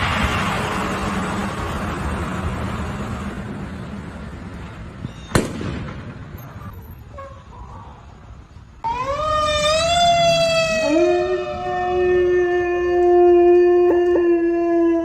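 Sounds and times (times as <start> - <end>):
rushing noise: 0.0 - 6.3.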